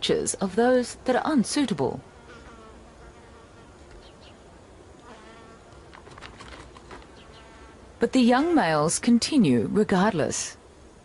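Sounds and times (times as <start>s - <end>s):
flying insects buzzing: 0.6s - 8.9s.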